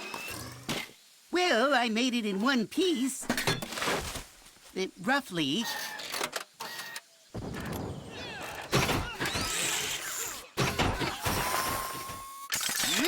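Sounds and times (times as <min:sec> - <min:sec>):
cartoon hits and crashes: 0:07.4 - 0:12.2.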